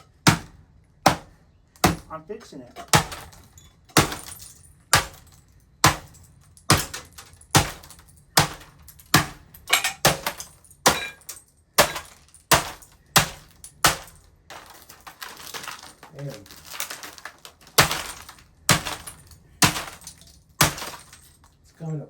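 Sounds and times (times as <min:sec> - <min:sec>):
breaking plastic rattle: 0:01.8 - 0:21.8
hard blows smashing laptop: 0:02.8 - 0:21.4.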